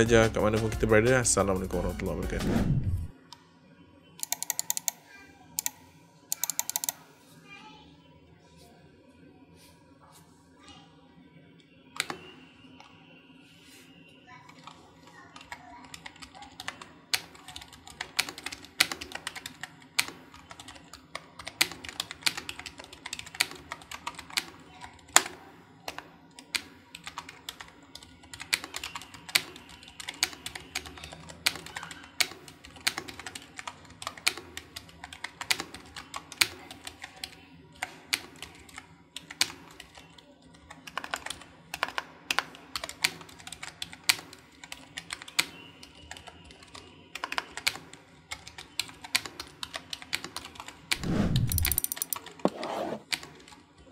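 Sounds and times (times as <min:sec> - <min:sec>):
keyboard key clicks: 0:04.2 - 0:05.0, 0:06.3 - 0:07.0, 0:51.0 - 0:52.2.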